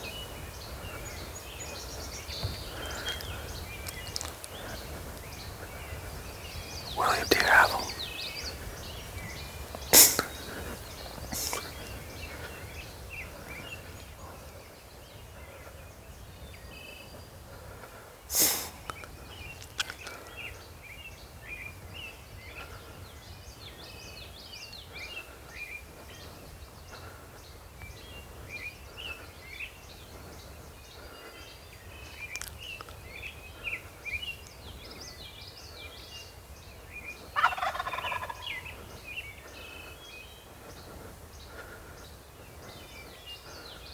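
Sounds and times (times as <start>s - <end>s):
songbirds chirping: 0.0s - 43.9s
turkey gobbling: 37.3s - 38.6s.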